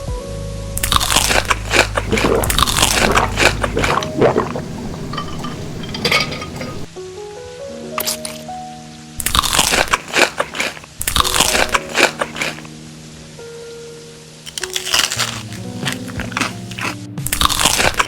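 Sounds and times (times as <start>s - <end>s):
person chewing crunchy food: 0.8s - 6.0s, 9.2s - 12.7s, 14.5s - 18.0s.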